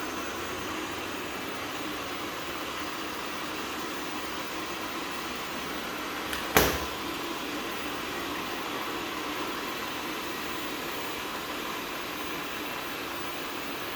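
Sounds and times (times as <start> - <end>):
sharp knock: 6.3 - 7.0.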